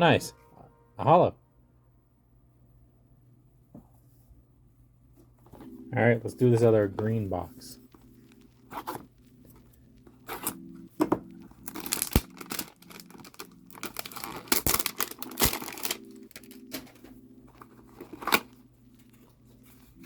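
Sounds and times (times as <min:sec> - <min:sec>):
packaging being torn open: 0:11.6 - 0:17.0.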